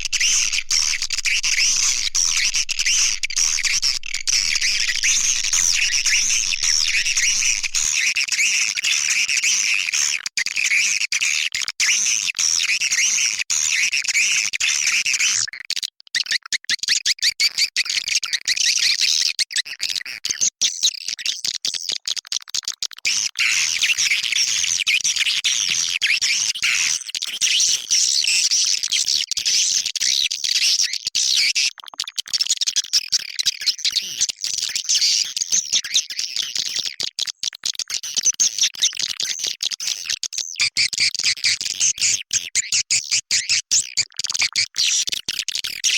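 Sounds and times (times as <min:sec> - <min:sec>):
swiftlet chirps twittering: 0:00.0 - 0:07.9.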